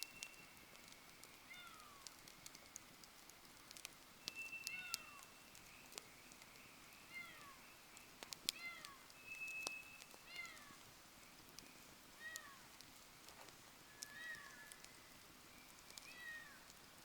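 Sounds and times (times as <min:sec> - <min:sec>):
campfire crackling and popping: 0:00.0 - 0:17.0
high whistle: 0:04.2 - 0:04.9.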